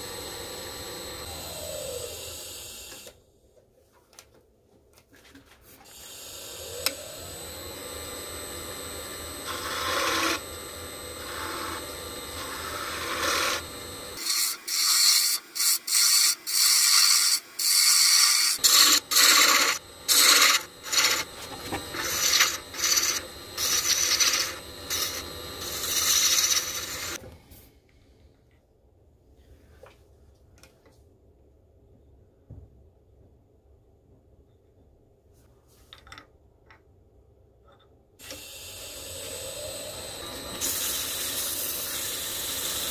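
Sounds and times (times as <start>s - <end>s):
tool scraping wood on a lathe: 9.0s - 27.2s.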